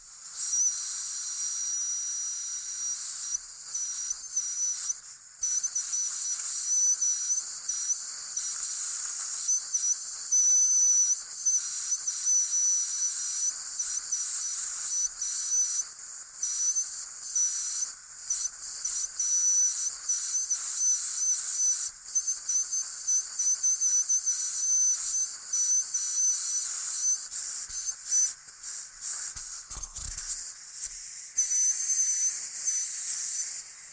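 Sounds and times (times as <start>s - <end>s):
dental drill whining: 17.4s - 30.5s.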